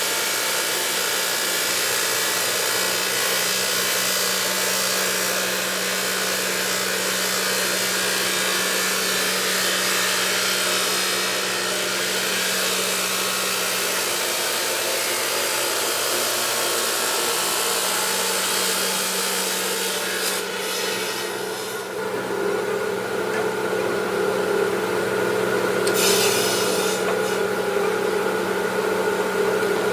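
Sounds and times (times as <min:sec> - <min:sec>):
stone-working machine hissing: 0:25.6 - 0:29.8.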